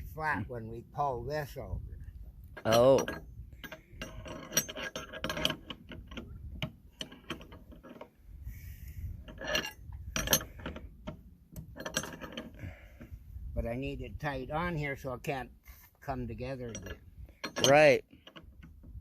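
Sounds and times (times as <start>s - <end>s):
metal hardware clinking: 2.5s - 8.1s, 9.2s - 12.6s, 16.5s - 18.8s.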